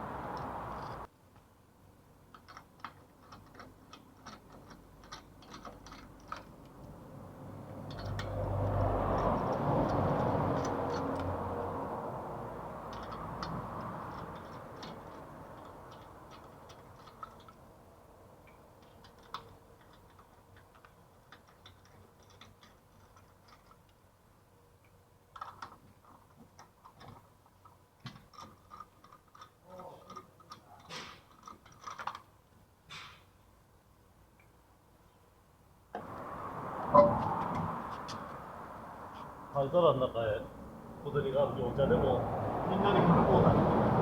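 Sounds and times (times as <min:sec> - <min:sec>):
hand tools clicking and clinking: 0:02.4 - 0:07.0, 0:07.7 - 0:11.6, 0:12.6 - 0:17.7.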